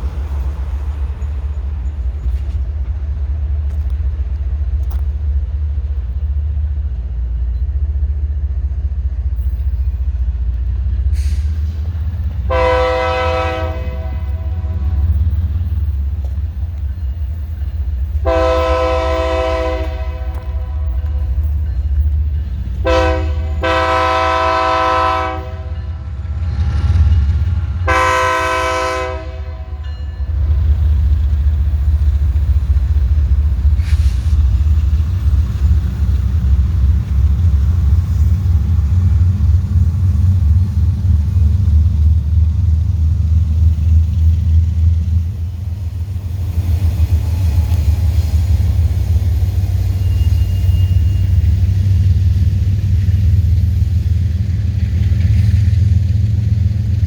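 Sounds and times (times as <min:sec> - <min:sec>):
train rolling past: 0:00.0 - 0:57.0
locomotive horn blasts: 0:12.4 - 0:15.2, 0:18.2 - 0:21.5, 0:22.8 - 0:27.0, 0:27.6 - 0:30.0.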